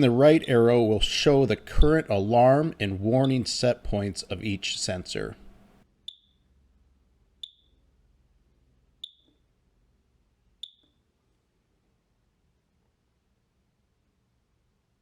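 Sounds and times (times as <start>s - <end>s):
short high keypad beeps: 6.1s - 6.4s, 7.4s - 7.8s, 9.0s - 9.3s, 10.6s - 11.0s.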